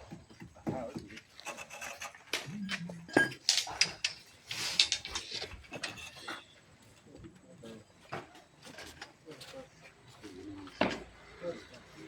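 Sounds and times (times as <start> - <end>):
steel bar clinking and scraping: 1.4 - 6.5.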